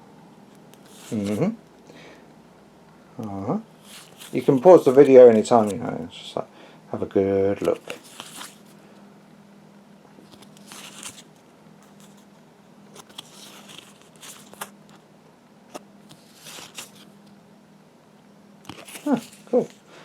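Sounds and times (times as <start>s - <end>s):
low steady hum: 0.0s - 20.0s
packaging rustling: 3.8s - 5.9s, 7.6s - 8.8s, 10.2s - 12.3s, 12.9s - 15.0s, 15.7s - 17.1s, 18.7s - 19.9s.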